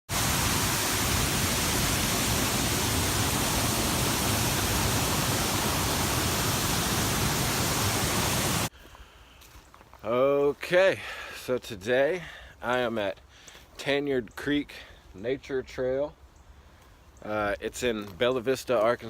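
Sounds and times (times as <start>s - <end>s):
waterfall rushing: 0.1s - 8.7s.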